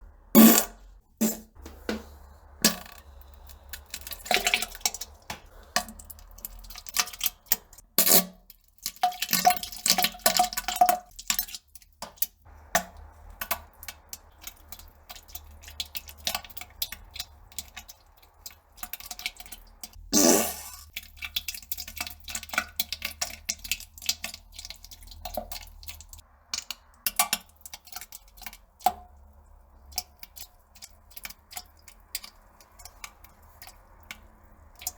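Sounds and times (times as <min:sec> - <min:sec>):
splashes in toilet: 0:02.6 - 0:07.8
farting: 0:20.2 - 0:20.8.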